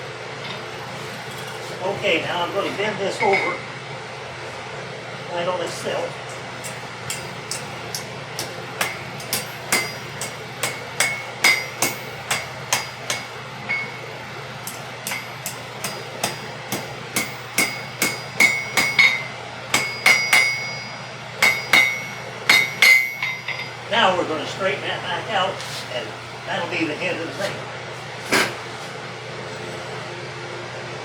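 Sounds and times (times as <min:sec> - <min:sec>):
hammer striking iron on anvil: 0:06.6 - 0:23.9.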